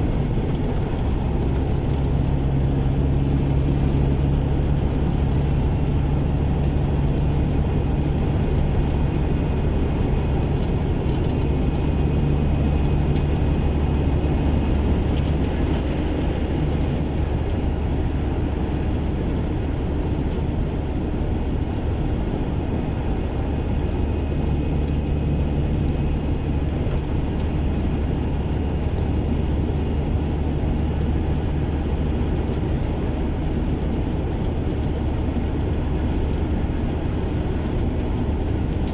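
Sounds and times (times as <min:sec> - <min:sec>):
diesel truck engine droning: 0:00.0 - 0:38.9.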